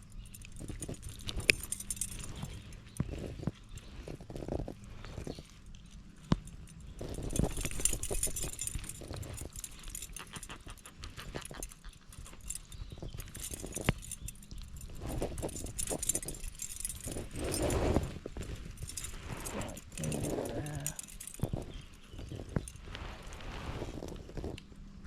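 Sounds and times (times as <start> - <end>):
handling clicks and rattles: 0.0 - 25.0.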